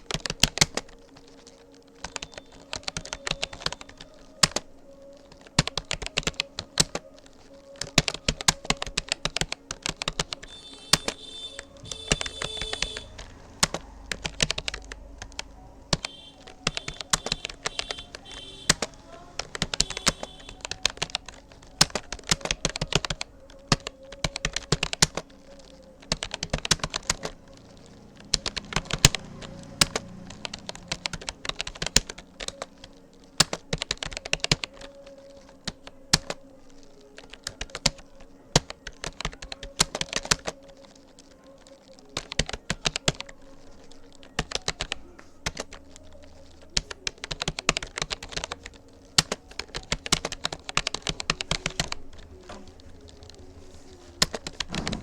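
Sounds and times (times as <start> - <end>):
keyboard key clicks: 7.7 - 25.3.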